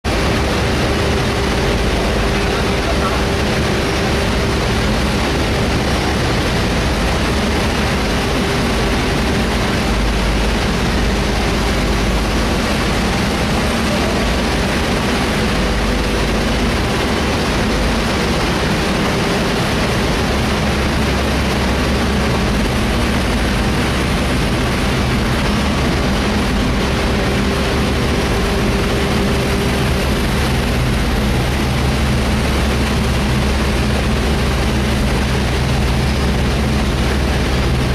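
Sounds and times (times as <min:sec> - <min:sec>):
industrial fan rushing airflow: 0:00.0 - 0:37.9.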